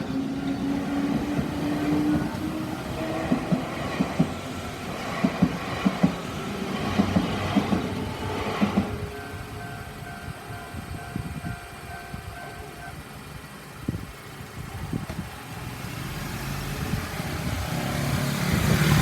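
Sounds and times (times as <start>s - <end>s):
vehicle engine and tyres: 0.0s - 19.0s
level crossing warning bell: 8.9s - 13.7s.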